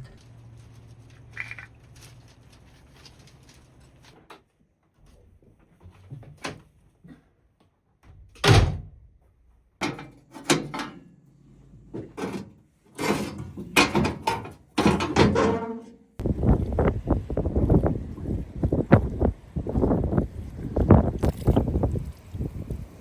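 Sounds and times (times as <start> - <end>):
wind rushing: 16.2 - 22.9.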